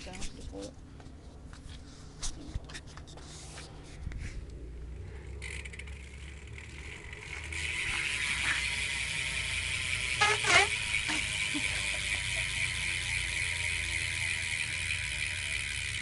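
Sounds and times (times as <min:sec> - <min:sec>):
bicycle freewheel hub ticking: 0:04.6 - 0:16.0.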